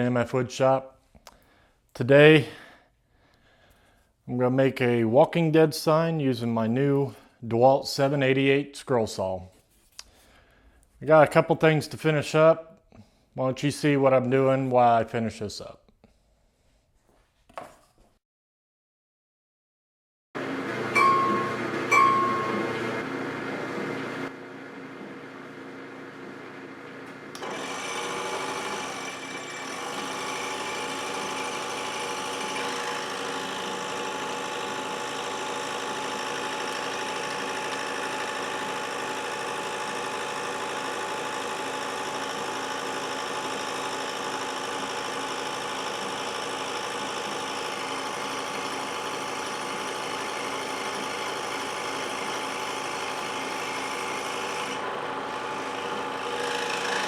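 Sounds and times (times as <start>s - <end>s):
scroll saw cutting wood: 26.9s - 57.0s.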